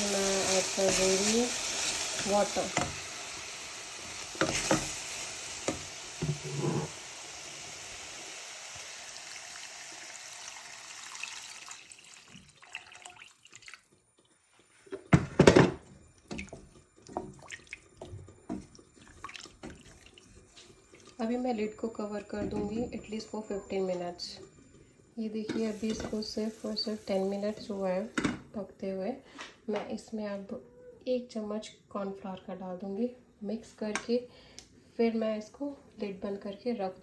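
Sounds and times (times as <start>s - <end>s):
water hissing in a hot pan: 0.0s - 13.3s, 25.5s - 28.1s.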